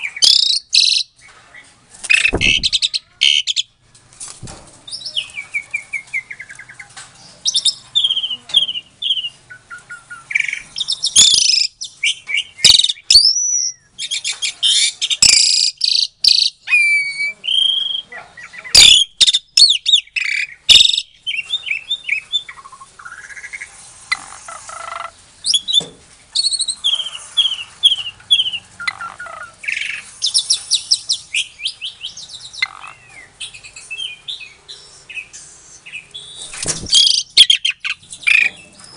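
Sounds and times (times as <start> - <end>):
sharp bird clicks: 2.0 - 3.6
starling singing varied song: 18.7 - 38.9.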